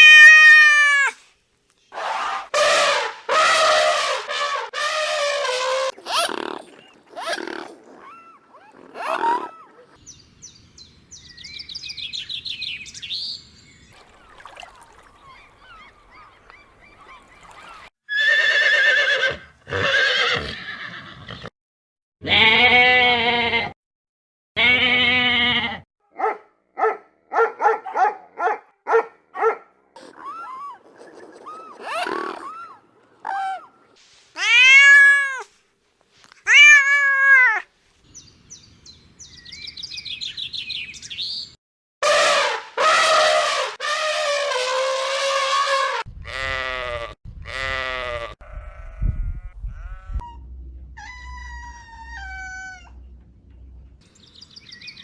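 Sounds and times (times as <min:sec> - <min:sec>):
goat bleating: 0:22.2 - 0:23.8, 0:24.6 - 0:25.8.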